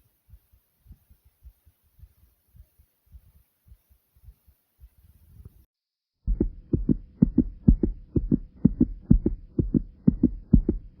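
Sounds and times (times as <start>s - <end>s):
faint steady hum: 6.3s - 11.0s
fast heartbeat thumps: 6.3s - 11.0s.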